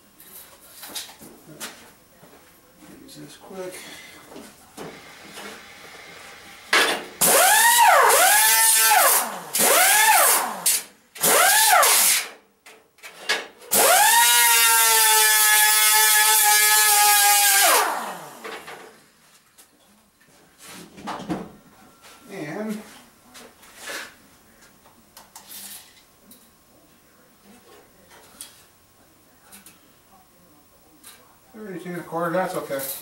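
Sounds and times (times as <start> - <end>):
cut-off wheel cutting metal: 7.2 - 12.3, 13.7 - 18.4.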